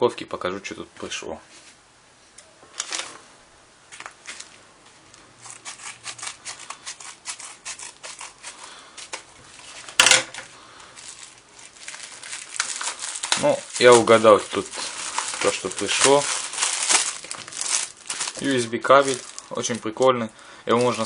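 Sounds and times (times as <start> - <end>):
packaging crackling and rustling: 3.9 - 21.0
packaging ripping: 5.4 - 8.8, 11.0 - 19.8, 20.7 - 21.0.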